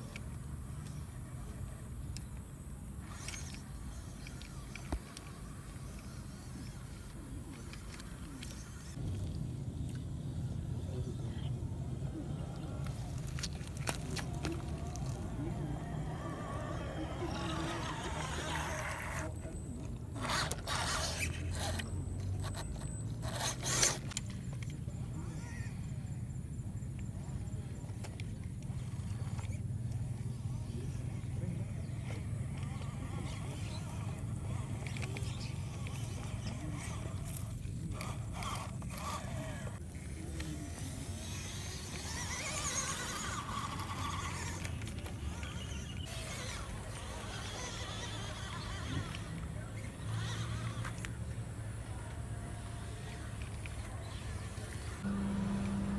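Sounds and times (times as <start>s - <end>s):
toy car scraping over rough ground: 0.0s - 55.9s
electric motor hum: 12.4s - 24.2s, 28.6s - 55.9s
low hum: 49.2s - 55.9s.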